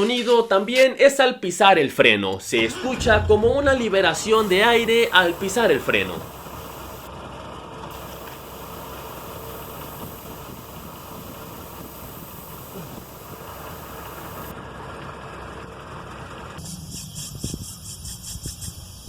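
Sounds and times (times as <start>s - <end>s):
car engine idling: 3.4s - 14.5s
hiss of escaping air: 4.3s - 7.1s, 7.9s - 14.5s.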